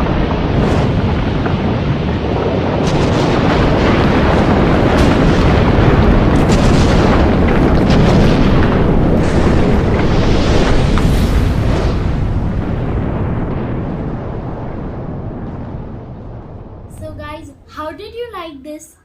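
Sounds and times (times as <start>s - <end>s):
sharp cracks: 0.0s - 14.0s
rumbling volcanic roar: 0.0s - 17.6s.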